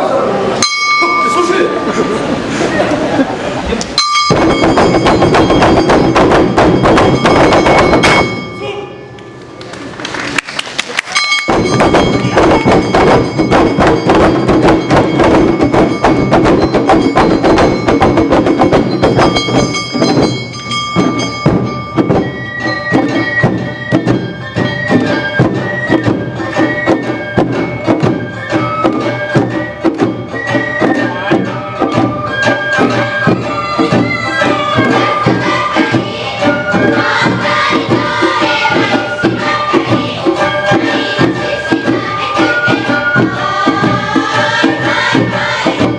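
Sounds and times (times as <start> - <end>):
hand-struck bell: 0.6 - 2.3, 4.0 - 9.4, 11.1 - 25.3
drum beat: 4.1 - 8.6, 11.1 - 45.9
bamboo flute melody: 11.1 - 45.9.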